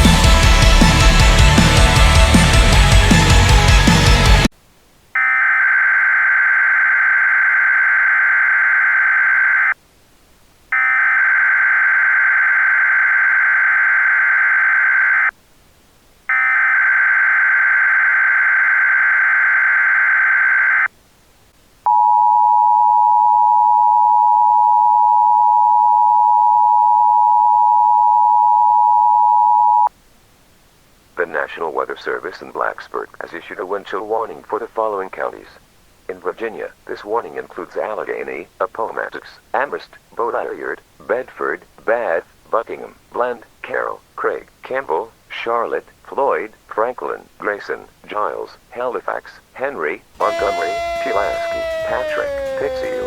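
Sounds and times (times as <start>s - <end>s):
two-tone attention signal: 50.2s - 53.0s.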